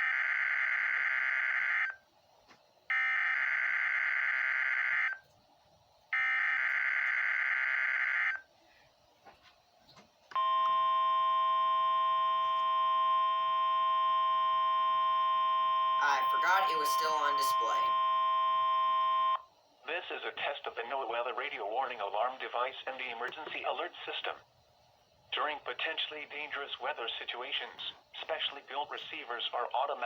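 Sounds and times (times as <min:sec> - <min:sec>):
steady warning alarm tone: 0:00.0 - 0:02.0, 0:02.9 - 0:05.2, 0:06.1 - 0:08.5, 0:10.3 - 0:19.5.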